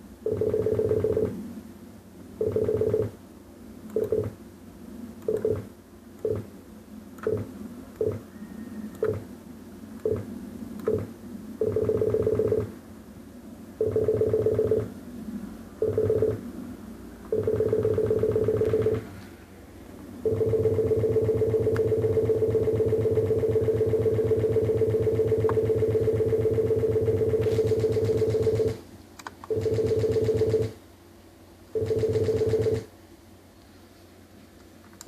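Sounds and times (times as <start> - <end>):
computer beeping: 15.8 - 16.4, 17.3 - 19.0, 20.2 - 28.8, 31.8 - 32.8.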